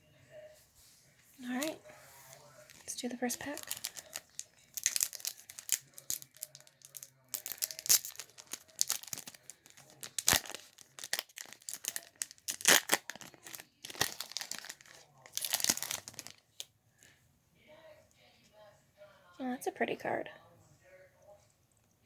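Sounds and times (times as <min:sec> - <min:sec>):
wrapper tearing and crinkling: 0:02.7 - 0:16.4.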